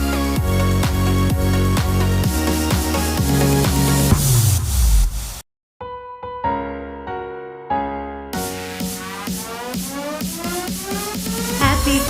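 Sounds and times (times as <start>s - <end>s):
held keyboard chords: 5.8s - 12.0s
electronic dance beat: 8.4s - 12.0s.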